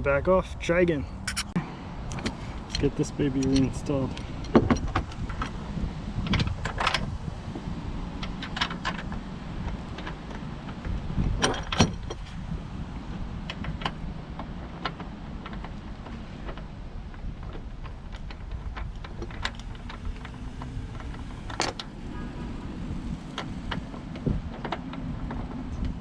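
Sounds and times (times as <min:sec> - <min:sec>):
steady low rumble: 0:00.0 - 0:26.0
metal clinks and knocks: 0:01.2 - 0:01.5, 0:02.1 - 0:07.2, 0:08.2 - 0:12.4.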